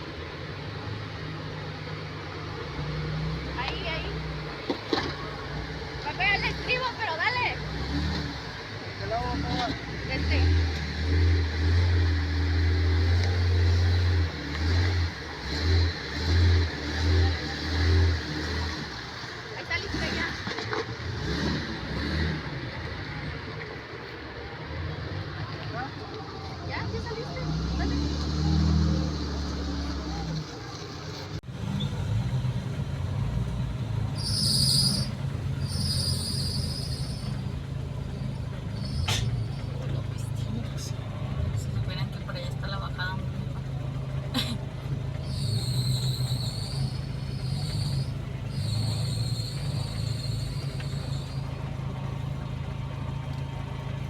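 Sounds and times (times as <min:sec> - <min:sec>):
off-road vehicle engine revving: 0:00.0 - 0:54.0
high-pitched squeals: 0:34.2 - 0:37.6, 0:45.2 - 0:51.6.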